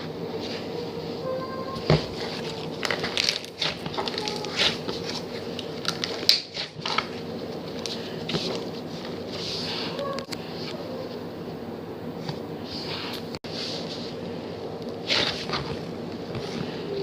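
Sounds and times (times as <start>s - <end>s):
hands squishing slime: 2.2s - 7.2s.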